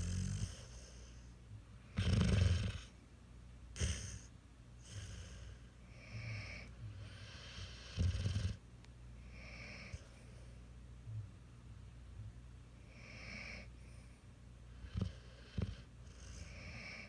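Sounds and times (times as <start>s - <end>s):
puppy snoring: 0.0s - 1.3s, 1.9s - 3.0s, 3.8s - 8.6s, 12.8s - 13.7s, 14.8s - 17.0s.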